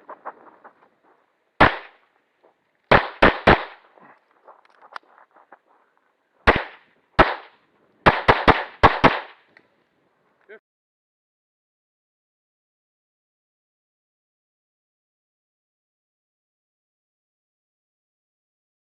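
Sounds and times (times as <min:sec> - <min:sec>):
distant gunshot pops: 0:01.6 - 0:02.0, 0:02.9 - 0:03.9, 0:06.4 - 0:09.4
pistol shots: 0:01.6 - 0:02.0, 0:02.9 - 0:03.9, 0:06.5 - 0:09.5.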